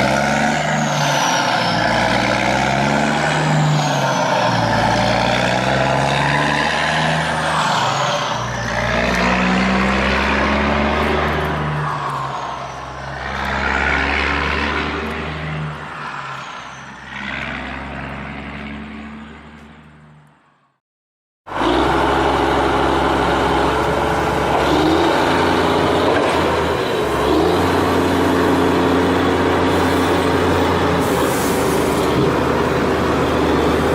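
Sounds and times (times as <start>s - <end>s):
radio-controlled truck engine: 0.0s - 18.0s.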